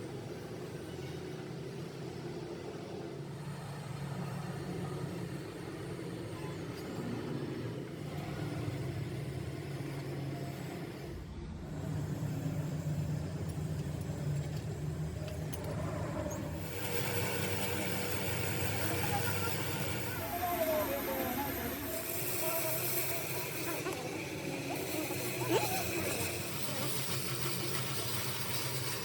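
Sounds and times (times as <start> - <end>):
motor humming: 7.4 - 29.0
hiss: 16.5 - 29.0.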